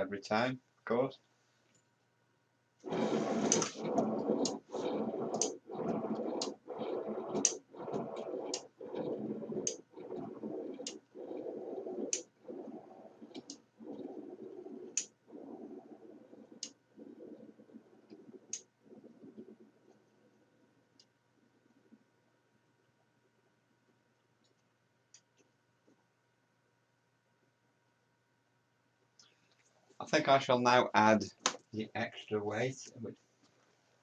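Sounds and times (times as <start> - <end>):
cart wheels rolling rumble: 2.9 - 15.0.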